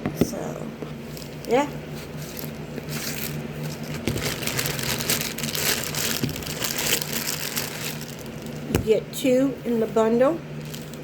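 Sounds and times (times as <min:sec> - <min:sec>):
packaging rustling and crinkling: 0:01.0 - 0:08.8, 0:10.6 - 0:11.0.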